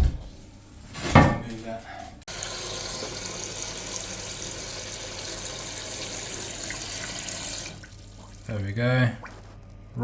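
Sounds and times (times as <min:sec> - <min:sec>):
toilet cistern filling: 0:02.3 - 0:09.4.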